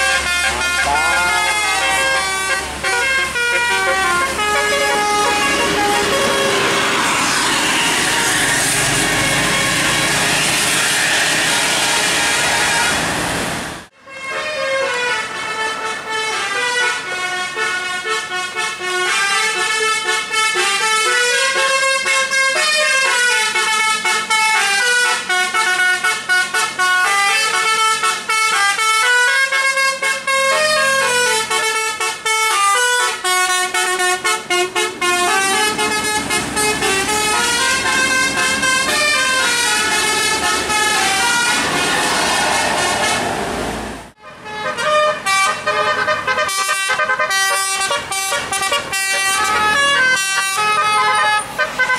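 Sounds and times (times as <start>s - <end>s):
air-horn trumpets playing tune: 0.0s - 13.1s, 14.0s - 43.4s, 44.2s - 51.9s
loud rushing noise: 1.2s - 13.9s, 34.1s - 44.2s.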